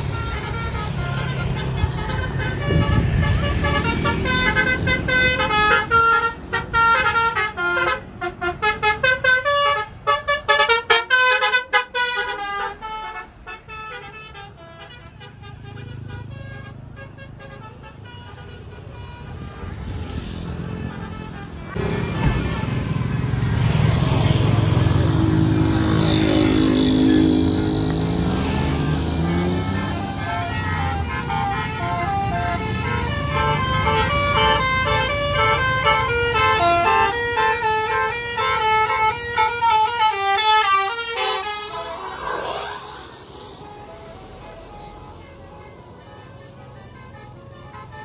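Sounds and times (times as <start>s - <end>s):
bus horn playing melody: 0.0s - 23.0s, 25.0s - 42.8s, 43.4s - 48.0s
road noise: 0.0s - 48.0s
vehicle engine rumble: 18.4s - 48.0s.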